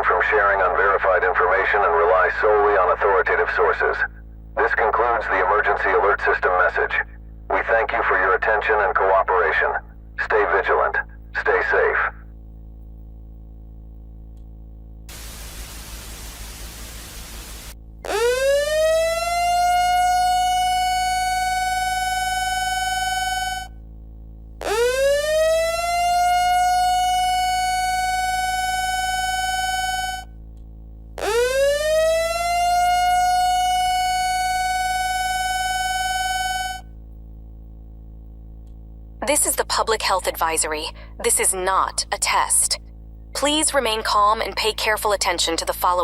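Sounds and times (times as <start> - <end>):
faint steady hum: 0.0 - 46.0
static hiss: 15.1 - 17.8.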